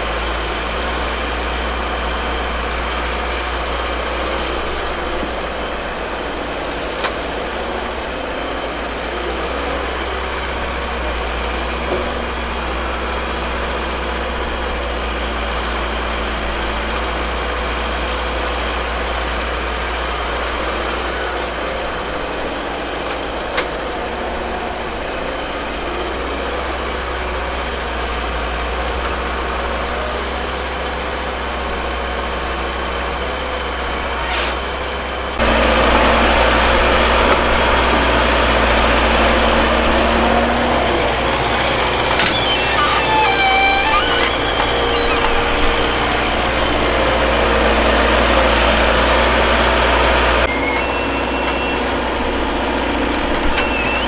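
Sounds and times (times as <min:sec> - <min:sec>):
heavy diesel machinery running: 0:00.0 - 0:54.0.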